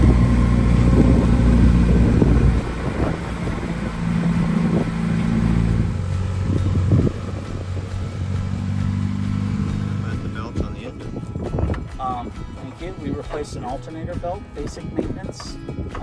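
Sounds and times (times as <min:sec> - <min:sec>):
aircraft engine droning: 0:00.0 - 0:11.9.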